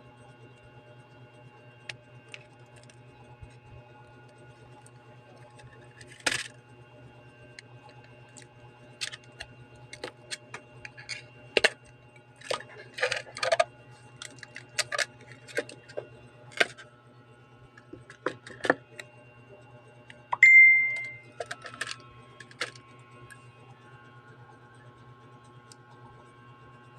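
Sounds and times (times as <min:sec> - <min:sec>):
steady low hum: 0:00.0 - 0:26.9
short ringing ding: 0:20.4 - 0:21.3.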